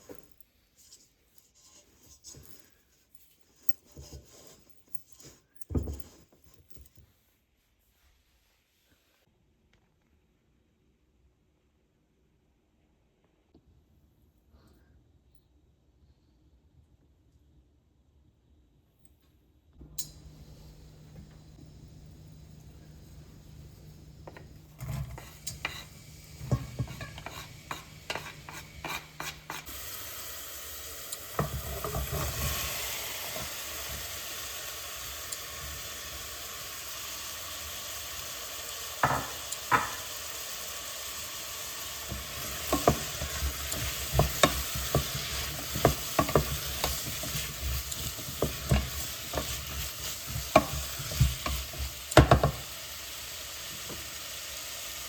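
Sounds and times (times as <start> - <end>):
food sizzling in a frying pan: 20.2 - 55.0
utensil scraping a pan: 24.2 - 29.9, 31.3 - 33.6, 42.1 - 52.7.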